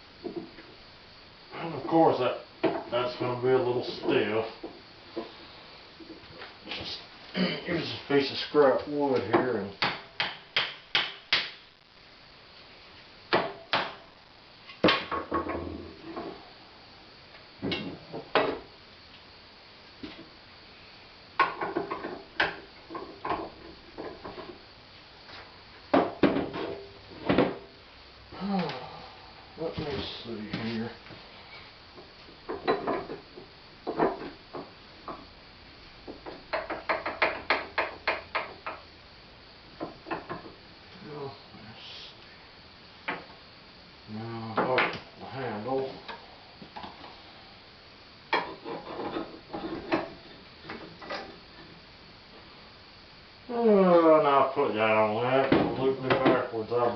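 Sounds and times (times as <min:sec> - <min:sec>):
wood knocking on iron mill: 0:09.2 - 0:11.5, 0:21.4 - 0:24.6, 0:36.0 - 0:38.8
knocks and taps on hand mill: 0:36.1 - 0:38.8.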